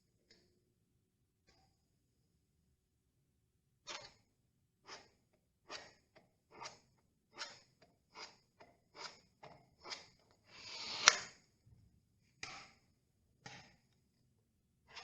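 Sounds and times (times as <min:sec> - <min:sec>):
filling knife scraping: 0:04.8 - 0:11.3.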